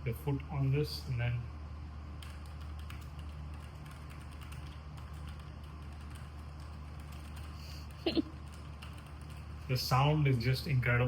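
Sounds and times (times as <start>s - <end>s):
mechanical keyboard typing: 2.2s - 7.6s, 8.3s - 9.6s.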